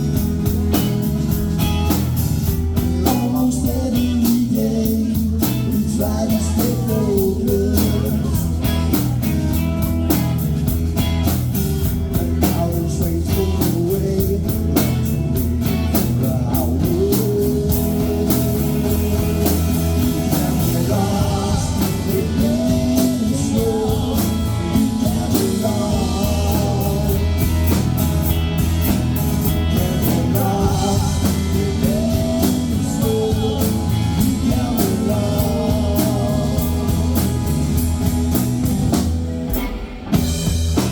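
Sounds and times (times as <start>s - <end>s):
electric guitar: 0.0s - 40.9s
steady drum beat: 0.0s - 40.9s
person singing: 2.8s - 9.7s, 12.0s - 27.8s, 29.5s - 38.0s.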